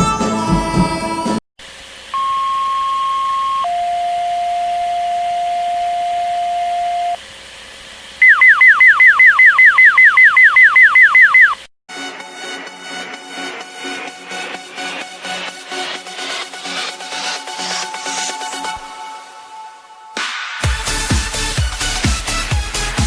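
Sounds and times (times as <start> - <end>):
lower steady electronic tone: 2.1 - 7.2, 8.2 - 11.4
high electronic beep: 8.2 - 11.6
rapid falling electronic chirps: 8.2 - 11.6.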